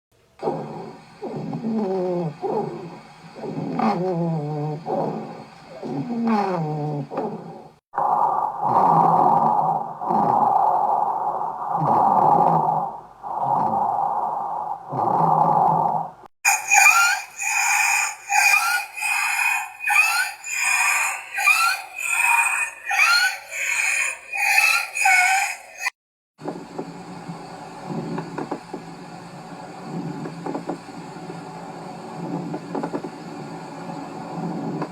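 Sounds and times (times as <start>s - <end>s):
high-pitched squeaky lung sounds: 0.4s - 7.6s, 14.9s - 25.9s
low rumbling lung sound: 0.4s - 16.3s, 26.4s - 34.9s
lung crackles: 0.4s - 16.3s.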